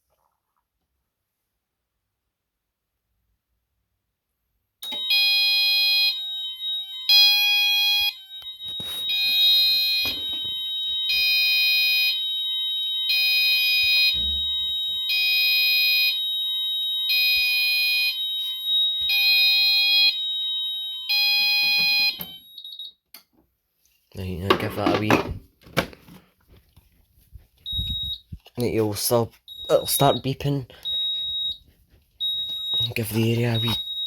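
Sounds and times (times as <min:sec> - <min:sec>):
alarm steady high tone: 0:04.8 - 0:22.9, 0:27.6 - 0:34.0
fire alarm multi-tone blasts: 0:04.8 - 0:23.0, 0:27.6 - 0:34.0.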